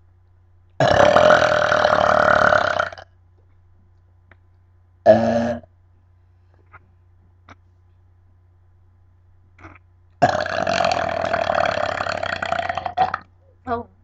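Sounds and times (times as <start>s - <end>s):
woman burping: 9.6s - 13.2s.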